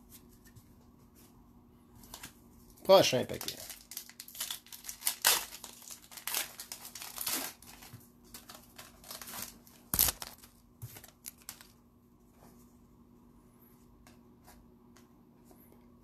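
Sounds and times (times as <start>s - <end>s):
wrapper tearing and crinkling: 3.2s - 11.7s.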